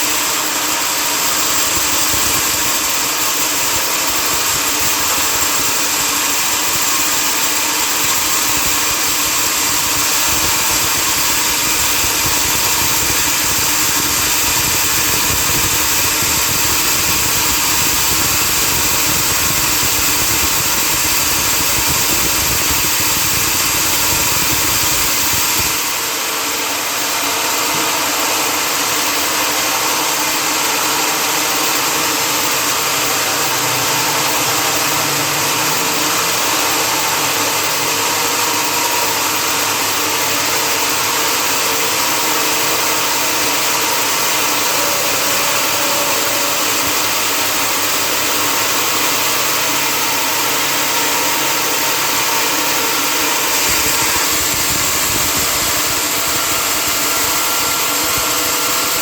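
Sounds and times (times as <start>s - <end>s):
sawmill machinery drone: 0.0s - 59.0s.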